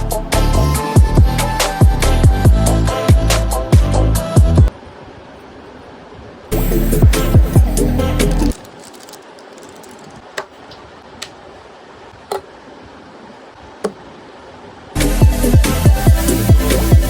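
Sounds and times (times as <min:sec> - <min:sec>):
electronic background music: 0:00.0 - 0:04.7, 0:06.6 - 0:08.6, 0:15.0 - 0:17.0
low steady hiss: 0:04.7 - 0:15.2.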